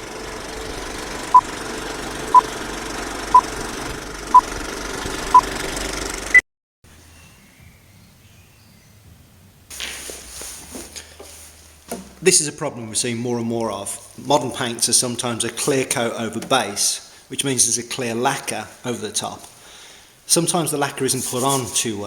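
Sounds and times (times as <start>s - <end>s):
soft knocks: 10.7s - 12.2s.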